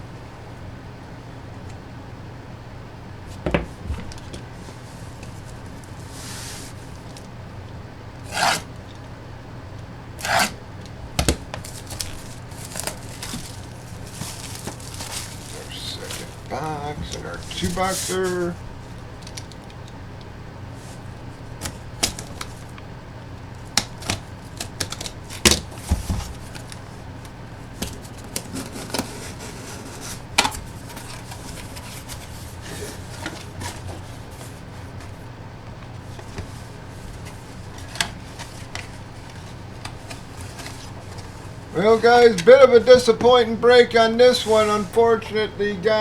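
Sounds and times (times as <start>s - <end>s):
steady low hum: 0.0s - 46.0s
box and packaging clicking: 10.2s - 17.8s, 23.6s - 26.8s.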